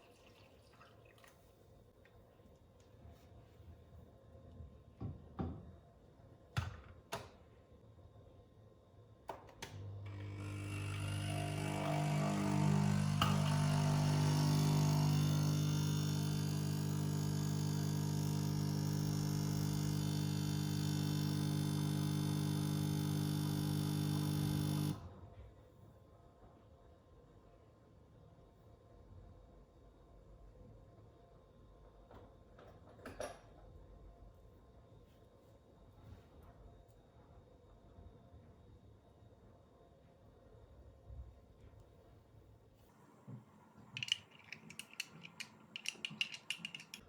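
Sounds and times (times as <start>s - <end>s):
pump buzzing hum: 9.8s - 25.2s
clicks and knocks: 43.8s - 47.0s.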